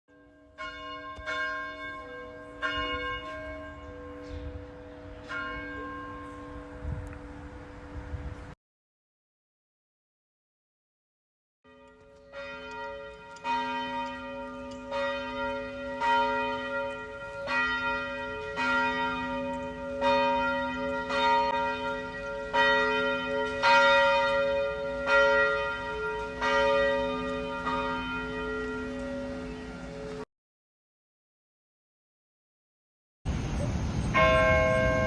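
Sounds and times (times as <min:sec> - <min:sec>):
church bells ringing: 0:00.1 - 0:08.5, 0:11.7 - 0:30.3, 0:34.0 - 0:35.0.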